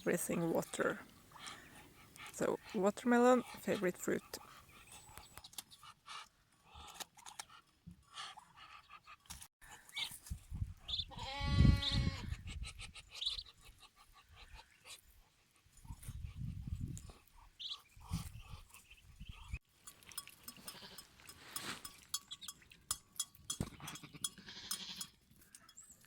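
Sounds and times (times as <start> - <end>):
ducklings peeping: 10.8 - 11.2, 11.8 - 15.0, 17.4 - 19.6.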